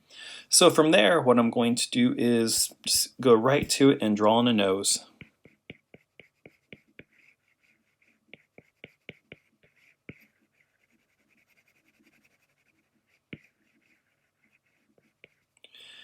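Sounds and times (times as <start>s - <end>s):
stylus scratching on tablet: 2.5s - 4.0s, 4.6s - 15.7s
stylus tapping on tablet: 5.1s - 7.2s, 8.3s - 10.3s.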